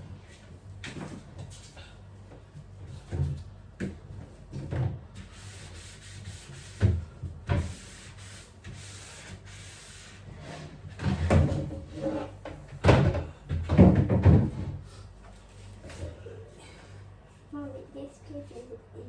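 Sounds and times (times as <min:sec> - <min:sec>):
wiping and rubbing: 0:05.2 - 0:06.8, 0:07.6 - 0:10.7
knocks of fridge parts: 0:12.7 - 0:14.8.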